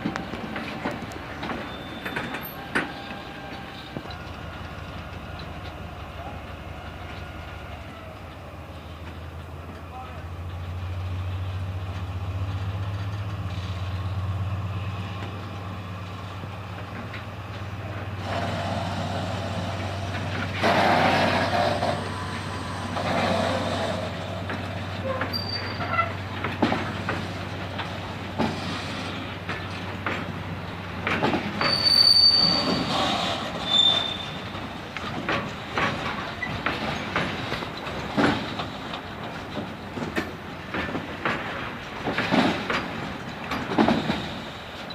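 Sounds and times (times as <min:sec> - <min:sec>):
locomotive engine hum: 0:00.0 - 0:44.9
wheels clacking over rail joints: 0:00.0 - 0:44.9
wheel squeals: 0:00.5 - 0:08.5, 0:20.5 - 0:26.8, 0:31.1 - 0:38.9, 0:43.6 - 0:44.9.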